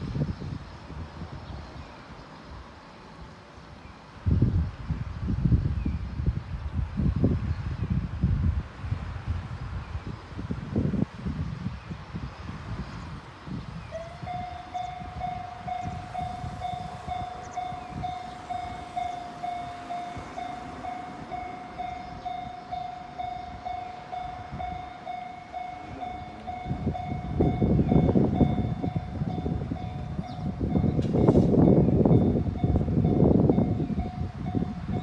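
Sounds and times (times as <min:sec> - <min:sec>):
train low rumble: 0:00.0 - 0:35.0
level crossing warning bell: 0:14.0 - 0:35.0.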